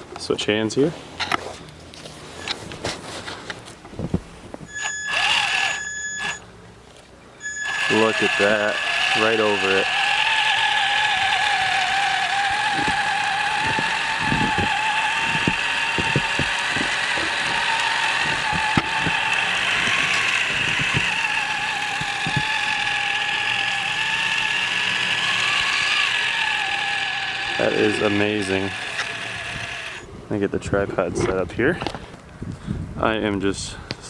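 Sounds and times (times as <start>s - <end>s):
electric rc truck whining: 4.7s - 6.5s, 7.4s - 30.1s.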